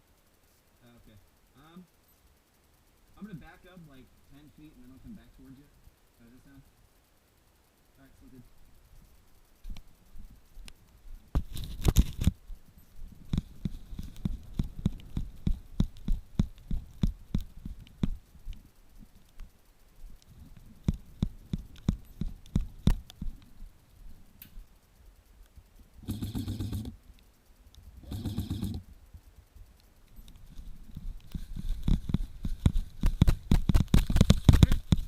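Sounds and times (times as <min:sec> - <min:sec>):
airsoft gun rapid fire: 0:26.0 - 0:27.0, 0:28.0 - 0:28.9.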